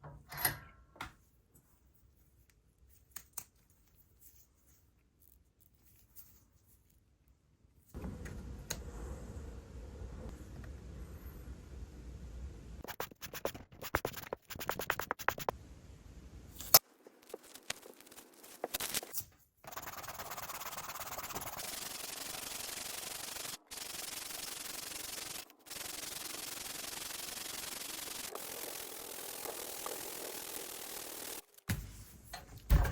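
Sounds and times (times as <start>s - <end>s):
scratchy sanding strokes: 19.7s - 25.0s.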